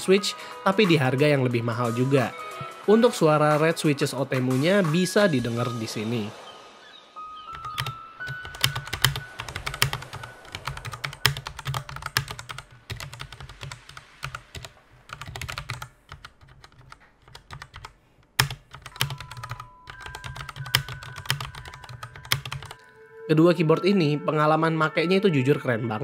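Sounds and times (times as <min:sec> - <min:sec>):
typing on mechanical keyboard: 0:07.5 - 0:22.8.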